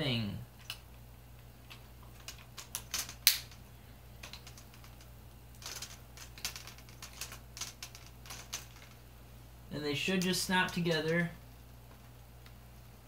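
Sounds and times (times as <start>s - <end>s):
plastic clips clicking: 1.7s - 3.6s.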